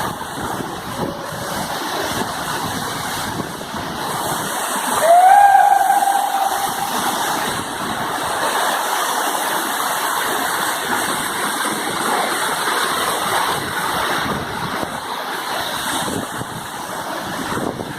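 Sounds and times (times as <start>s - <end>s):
waterfall rushing: 0.0s - 17.9s
short held tone: 5.0s - 7.4s.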